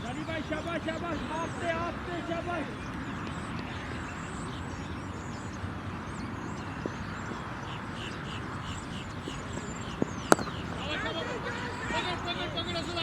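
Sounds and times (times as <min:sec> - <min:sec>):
small birds chirping: 0:00.0 - 0:13.0.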